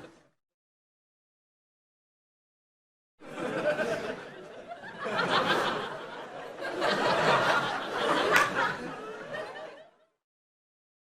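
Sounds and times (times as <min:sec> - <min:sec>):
audience laughing: 0:03.2 - 0:10.2.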